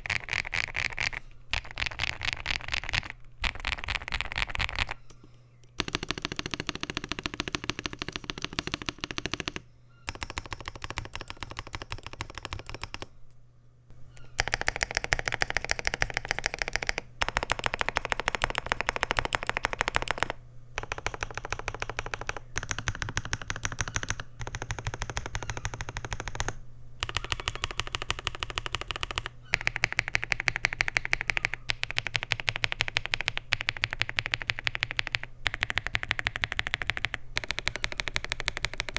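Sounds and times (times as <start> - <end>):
keyboard key clicks: 14.4 - 38.9.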